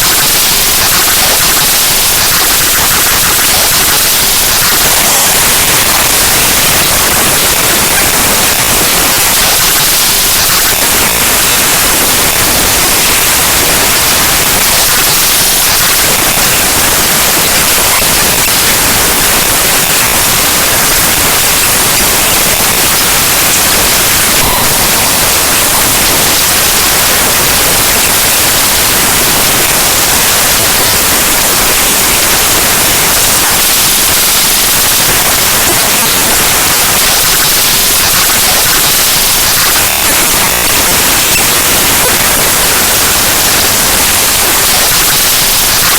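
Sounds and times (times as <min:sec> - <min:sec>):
harsh static hiss: 0:00.0 - 0:45.9.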